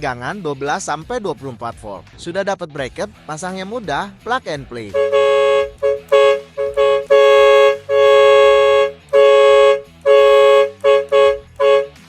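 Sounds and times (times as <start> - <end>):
twin-tone air horn blasts: 4.9 - 12.0.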